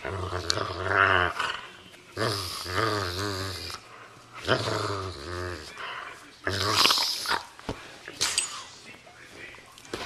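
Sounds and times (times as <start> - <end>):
dog growling: 0.0 - 7.5.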